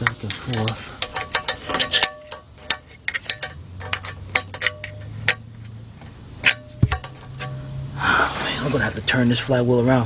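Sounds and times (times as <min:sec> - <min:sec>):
screwdriver clinking on metal: 0:00.0 - 0:05.5.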